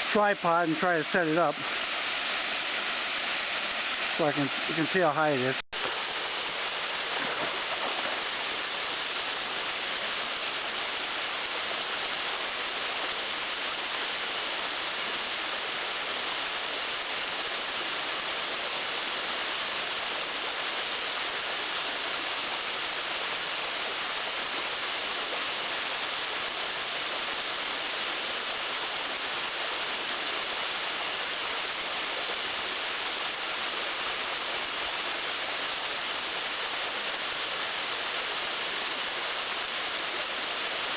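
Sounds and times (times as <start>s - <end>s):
small waterfall rushing: 0.0s - 40.9s.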